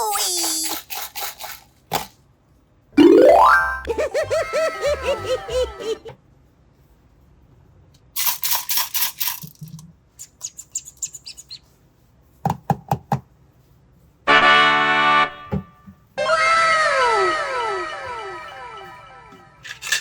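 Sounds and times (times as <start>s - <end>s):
high twinkling chimes: 3.0s - 3.9s
cartoon boings: 3.0s - 4.0s
harsh buzzer blast: 14.3s - 15.6s.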